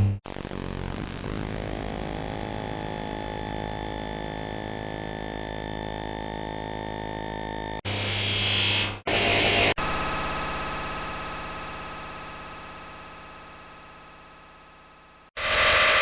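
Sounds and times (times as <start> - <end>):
electronic sci-fi drone: 15.4 - 16.0
noisy electronic effect: 15.4 - 16.0.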